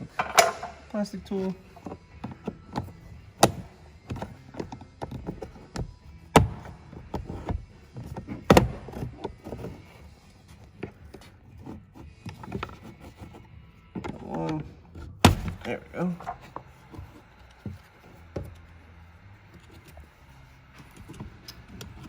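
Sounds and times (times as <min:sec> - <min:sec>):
retaining clips popping loose: 0:00.0 - 0:18.8
plastic trim tool prying panel: 0:01.7 - 0:18.6.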